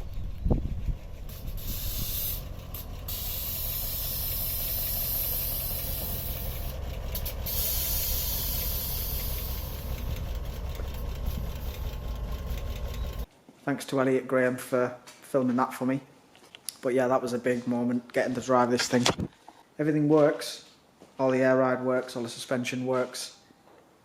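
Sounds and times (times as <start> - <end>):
car engine rumbling: 0.0 - 13.3
loud steady hiss: 1.3 - 10.0.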